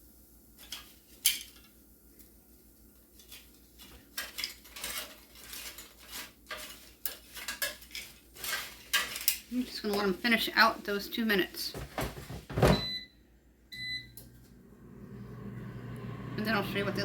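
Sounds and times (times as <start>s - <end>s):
metal basket clinking and scraping: 3.2s - 10.8s
metal clattering: 4.2s - 10.0s.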